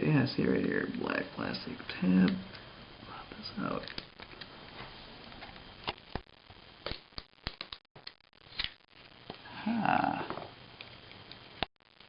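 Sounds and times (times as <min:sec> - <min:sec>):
plastic clicks and snaps: 0:03.8 - 0:04.5.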